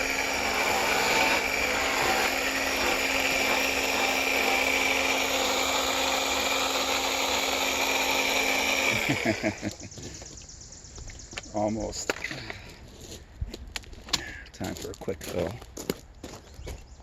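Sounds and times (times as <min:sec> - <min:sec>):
pressure washer pump whining: 0:00.0 - 0:09.8.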